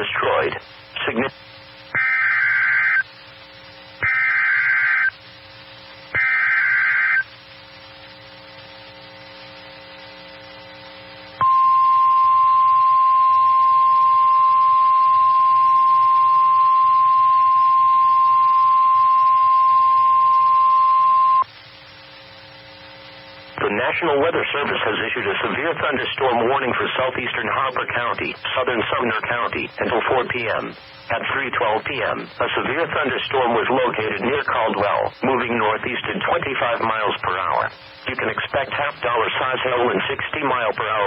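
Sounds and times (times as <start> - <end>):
screechy digital data bursts: 2.0 - 3.2, 4.0 - 5.2, 6.2 - 7.3
steady warning alarm tone: 2.0 - 3.2, 4.0 - 5.2, 6.2 - 7.4, 11.4 - 21.5.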